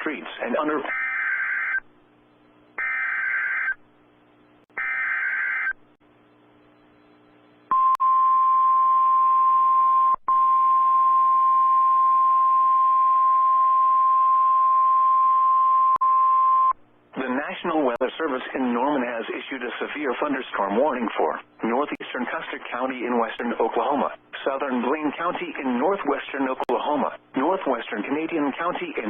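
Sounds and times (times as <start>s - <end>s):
warbling data bursts: 2.8s - 3.8s.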